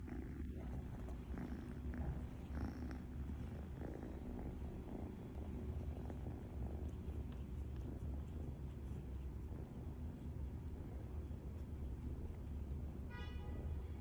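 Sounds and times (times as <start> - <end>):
cat snoring: 0.0 - 6.9.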